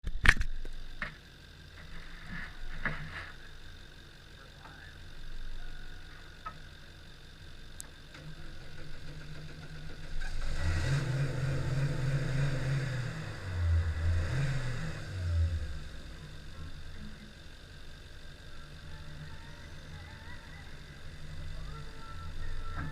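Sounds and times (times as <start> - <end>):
car engine revving: 8.6 - 22.9.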